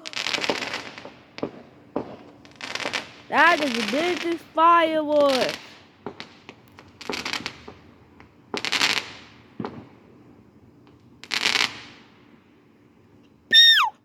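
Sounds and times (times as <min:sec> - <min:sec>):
fireworks bangs: 0:00.0 - 0:10.2, 0:10.9 - 0:12.4
fireworks crackling: 0:00.0 - 0:12.7.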